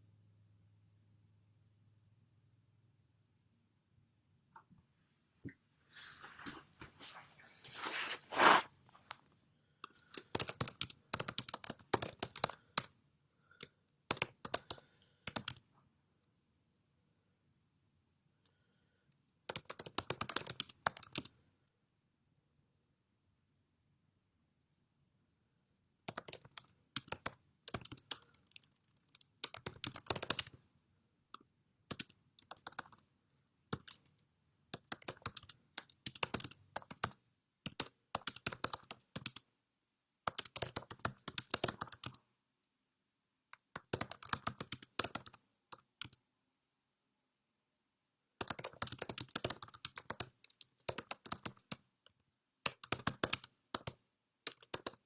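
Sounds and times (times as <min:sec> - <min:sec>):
rapid small clicks: 0:09.9 - 0:15.7, 0:19.5 - 0:21.4, 0:26.1 - 0:30.6, 0:31.4 - 0:33.1, 0:33.7 - 0:39.5, 0:40.2 - 0:42.2, 0:43.5 - 0:46.2, 0:48.4 - 0:55.0.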